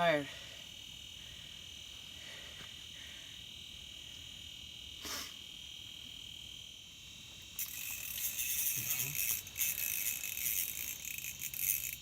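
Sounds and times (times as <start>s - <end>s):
jangling rattle: 7.6s - 12.0s.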